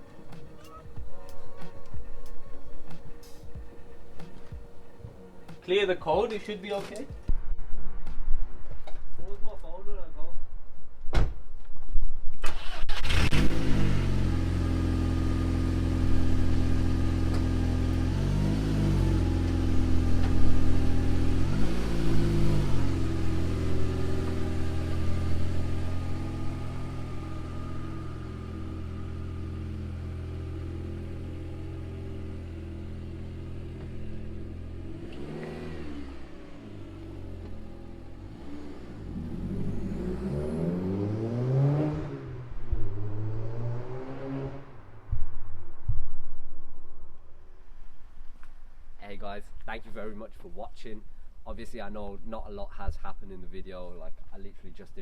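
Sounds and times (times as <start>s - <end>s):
car engine starting and idling: 0.0s - 7.3s, 12.4s - 45.2s
engine rev blips: 12.6s - 45.2s.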